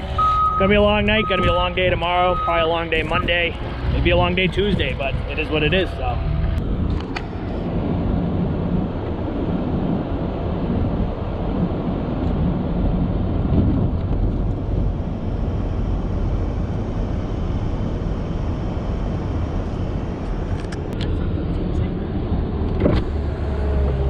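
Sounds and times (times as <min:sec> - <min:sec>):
vehicle engine running: 0:00.0 - 0:10.2.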